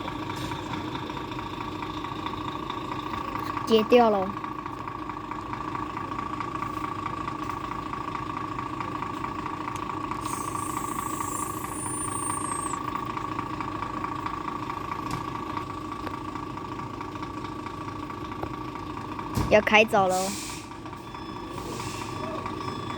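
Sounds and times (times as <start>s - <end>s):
diesel truck engine idling: 0.0s - 22.9s
thin high whistle: 10.2s - 12.8s.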